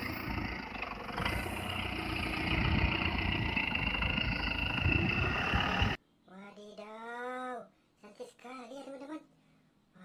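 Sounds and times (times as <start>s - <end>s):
vehicle engine running: 0.0s - 6.0s.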